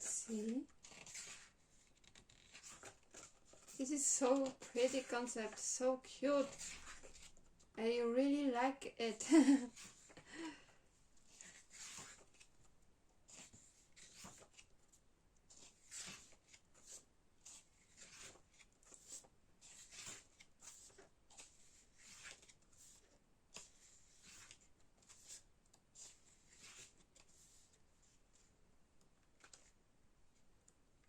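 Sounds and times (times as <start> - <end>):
pages turning: 0.1 - 7.5, 9.4 - 10.6, 11.2 - 12.7, 13.3 - 28.5, 29.2 - 29.8.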